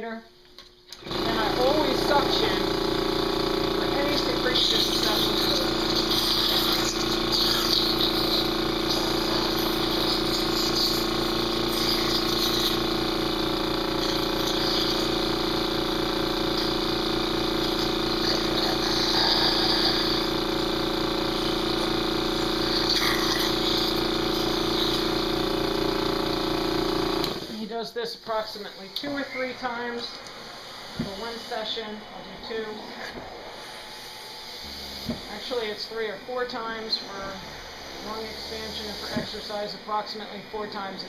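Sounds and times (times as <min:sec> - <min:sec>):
suction pump running with hiss: 0:00.9 - 0:41.0.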